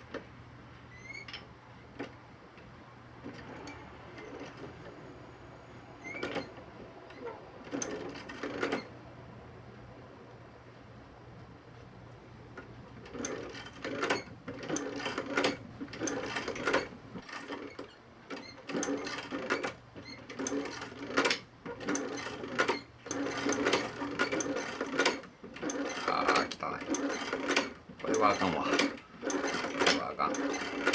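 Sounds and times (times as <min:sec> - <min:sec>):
sewing machine stitching leather: 0:03.2 - 0:05.3, 0:06.0 - 0:08.9, 0:13.0 - 0:30.9.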